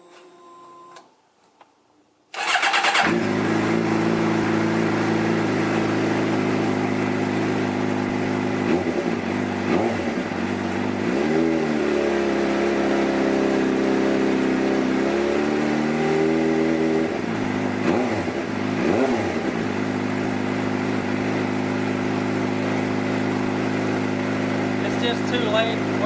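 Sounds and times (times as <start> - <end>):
motorcycle engine idling: 2.4 - 11.1, 19.4 - 26.0
engine throttle blips: 17.3 - 26.0.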